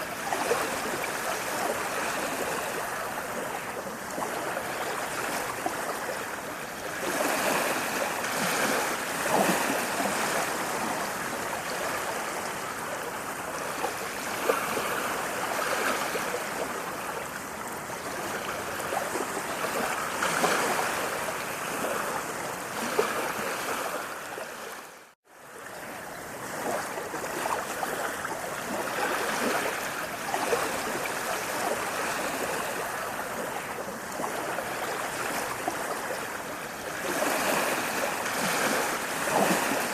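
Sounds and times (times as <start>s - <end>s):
running water with splashes: 0.0s - 39.9s.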